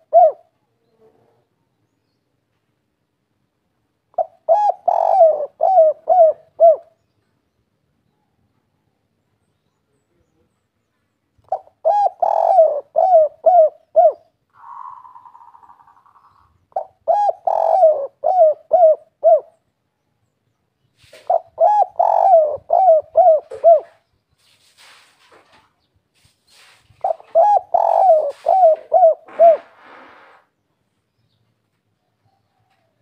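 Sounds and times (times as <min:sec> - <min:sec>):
dove cooing: 0:00.0 - 0:01.4, 0:04.1 - 0:07.0, 0:11.4 - 0:19.6, 0:21.0 - 0:24.0, 0:27.0 - 0:30.4.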